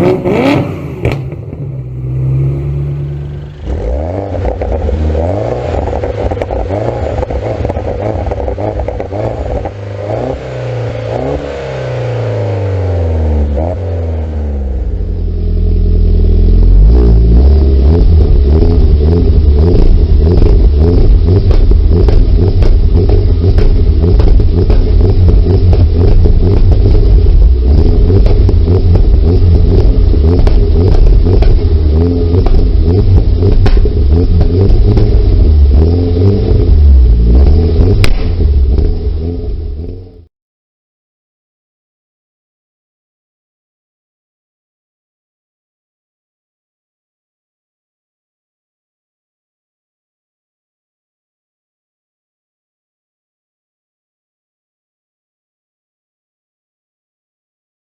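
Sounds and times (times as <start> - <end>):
car engine revving: 0.0 - 40.3
exhaust pops crackling: 17.8 - 40.2.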